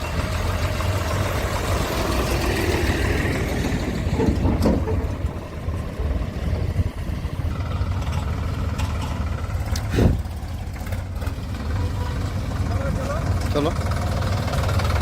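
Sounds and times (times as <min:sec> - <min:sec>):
diesel engine running: 0:00.0 - 0:15.0
clunks and thump: 0:04.0 - 0:05.5.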